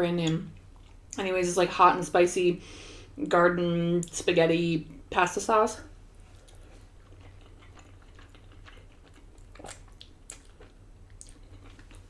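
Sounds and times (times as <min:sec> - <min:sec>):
low steady hum: 0:00.0 - 0:12.0
chewing wet mouth smacks: 0:06.4 - 0:12.0.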